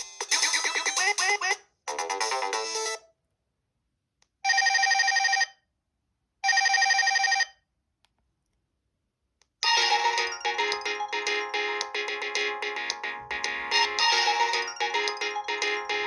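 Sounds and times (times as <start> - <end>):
polyphonic ringtone melody: 0.0 - 1.3, 9.6 - 16.0
phone ringing tone: 4.5 - 5.5, 6.4 - 7.5, 9.6 - 16.0.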